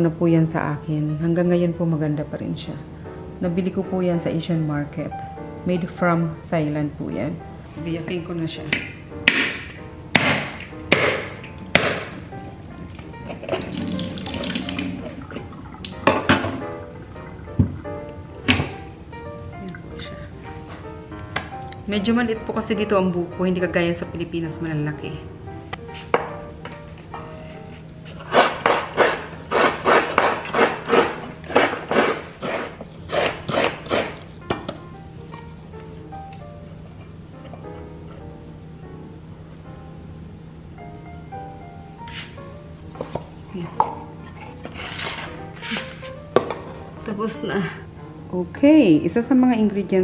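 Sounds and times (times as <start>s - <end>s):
blade chopping coconut: 10.2s - 12.2s, 28.2s - 34.2s
coconut water running out: 12.4s - 15.9s.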